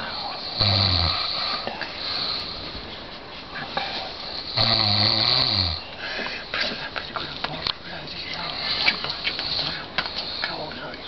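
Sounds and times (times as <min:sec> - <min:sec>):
person snoring: 0:00.0 - 0:02.4, 0:04.3 - 0:05.8
soft breathing: 0:01.2 - 0:04.5, 0:05.8 - 0:11.0.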